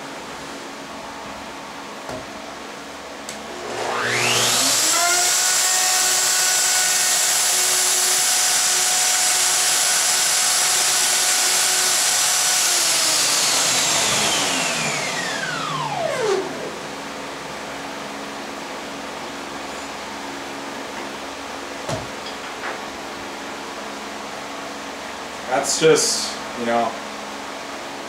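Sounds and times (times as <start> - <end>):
router motor whining: 3.3 - 17.1.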